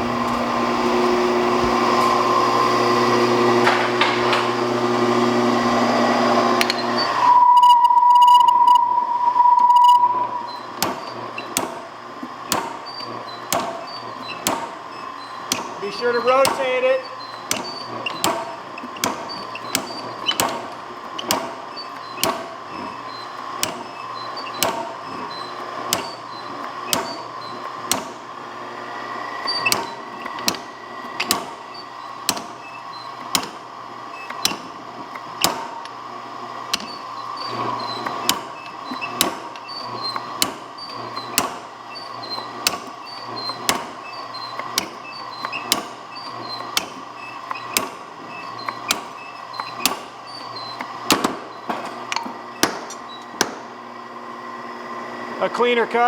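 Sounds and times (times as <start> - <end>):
steady machine hum: 0.0 - 56.0
power hammer striking steel: 3.4 - 5.0, 10.0 - 28.2, 29.4 - 36.0, 36.7 - 53.8.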